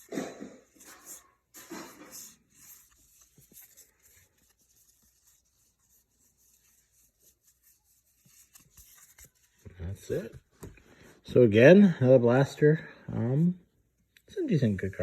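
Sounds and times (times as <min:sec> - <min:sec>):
cards sliding and shuffling: 0:00.0 - 0:11.0.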